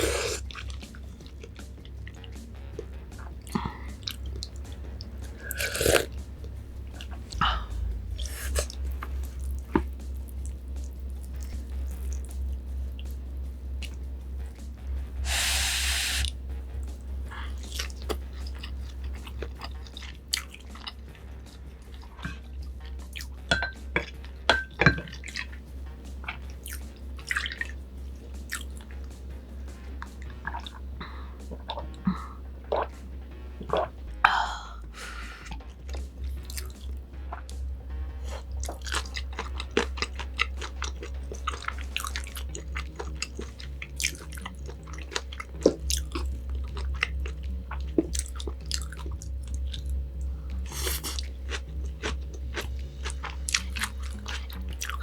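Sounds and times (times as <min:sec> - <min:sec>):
chewing with mouth clicks: 0:00.0 - 0:14.7, 0:17.3 - 0:34.0, 0:35.4 - 0:55.0
low steady hum: 0:00.0 - 0:55.0
clinks against glass: 0:23.5 - 0:23.8, 0:24.5 - 0:25.1.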